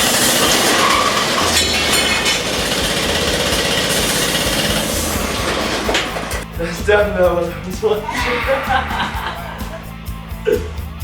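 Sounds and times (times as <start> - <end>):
loud rattle: 0.0 - 6.4
small engine running: 0.0 - 6.4.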